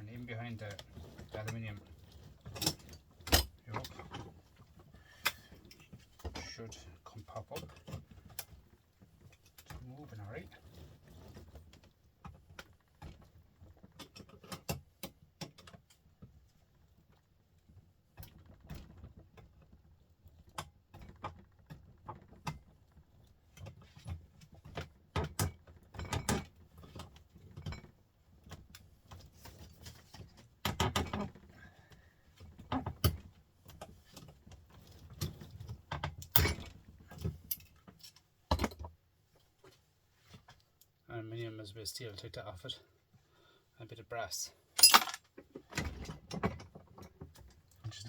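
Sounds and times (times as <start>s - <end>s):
metal clicking and clanking: 44.8s - 45.4s.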